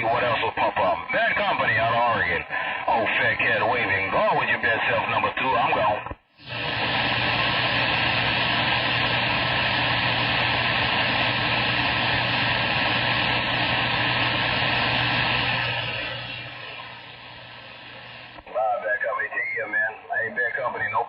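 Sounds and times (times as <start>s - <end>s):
radio static hiss: 0.0s - 21.0s
low hum: 6.4s - 18.5s.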